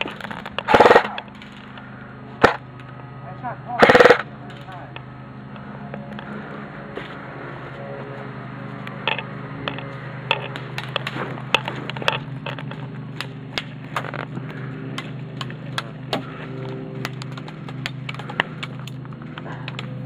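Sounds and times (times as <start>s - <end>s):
steady low hum: 0.0s - 20.0s
airsoft gun shots: 0.7s - 1.2s, 2.4s - 2.6s, 3.8s - 4.3s.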